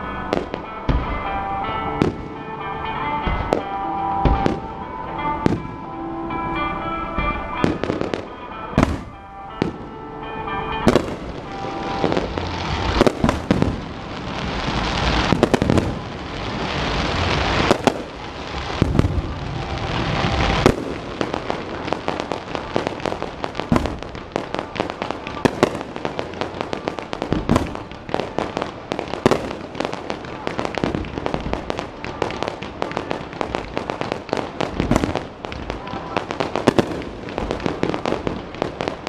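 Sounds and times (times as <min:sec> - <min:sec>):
fireworks bangs: 0:00.0 - 0:39.0
fireworks crackle and hiss: 0:10.8 - 0:39.0.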